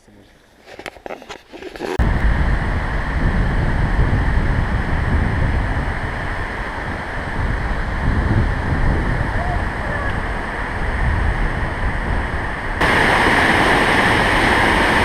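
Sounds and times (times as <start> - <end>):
waterfall rushing: 2.0 - 15.0.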